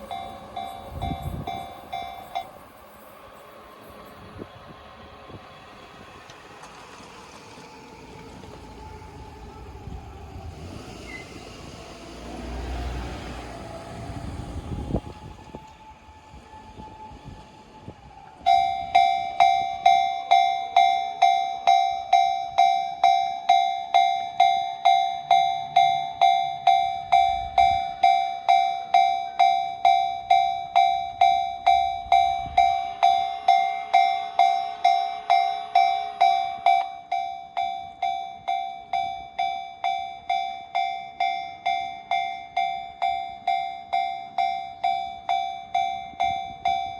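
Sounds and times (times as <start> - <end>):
level crossing bell clanging: 0.0 - 2.6.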